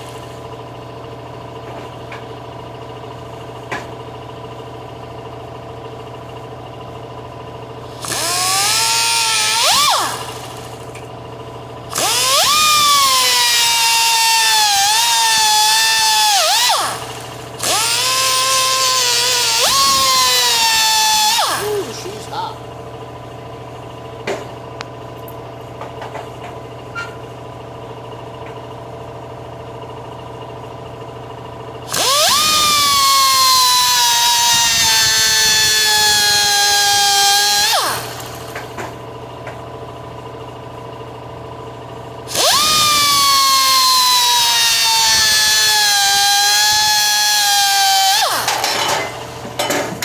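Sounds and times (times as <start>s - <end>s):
die grinder cutting metal: 7.9s - 11.1s, 11.9s - 22.6s, 31.9s - 39.0s, 42.3s - 50.0s.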